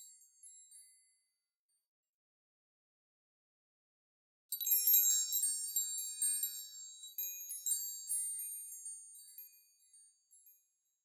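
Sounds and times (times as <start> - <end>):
small metal door bells jingling: 4.5 - 11.0.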